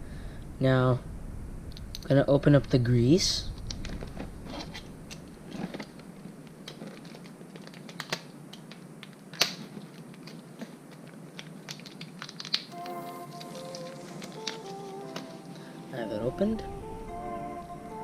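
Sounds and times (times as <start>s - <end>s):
plastic container clicking and crackling: 5.1s - 12.7s
background music: 12.7s - 18.0s.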